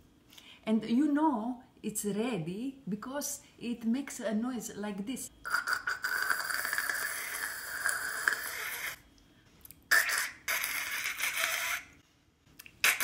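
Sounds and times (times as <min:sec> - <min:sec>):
woman imitating hissing mouth noise: 0:05.5 - 0:09.0, 0:09.9 - 0:12.0, 0:12.8 - 0:13.0.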